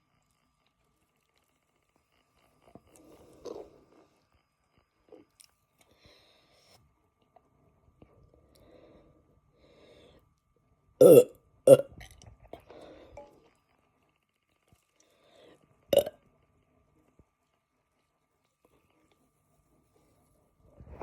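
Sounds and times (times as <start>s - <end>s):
person burping: 11.0s - 11.9s.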